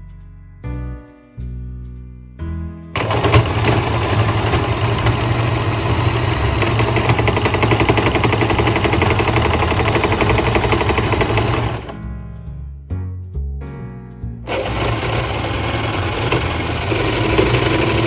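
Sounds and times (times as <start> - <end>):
electric sewing machine stitching: 3.0 - 12.0, 14.5 - 18.0.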